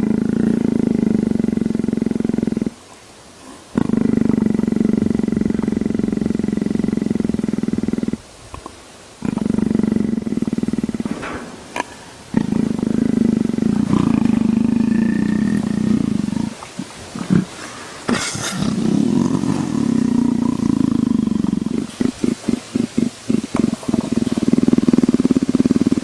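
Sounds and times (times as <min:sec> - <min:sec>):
jaguar snoring rumbles: 0:00.0 - 0:02.8, 0:03.5 - 0:08.2, 0:09.2 - 0:26.0
short grunting pulses: 0:09.2 - 0:24.4
breathy burst: 0:10.6 - 0:15.7.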